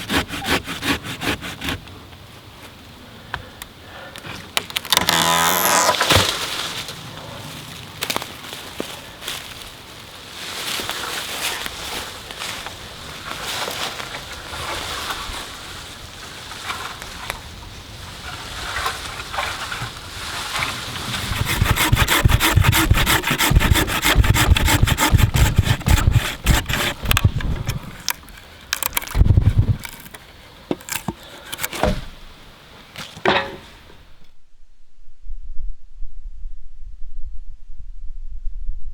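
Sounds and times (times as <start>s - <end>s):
hand saw cutting wood: 0.0s - 1.8s, 4.9s - 6.3s, 21.1s - 32.0s
knocks and rubbing: 21.2s - 32.1s.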